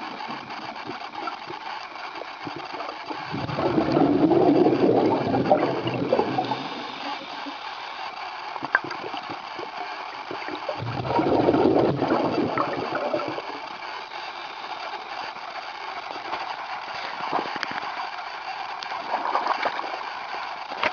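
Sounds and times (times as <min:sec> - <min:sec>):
underwater bubbles bursting: 0:00.0 - 0:07.6, 0:08.6 - 0:14.0.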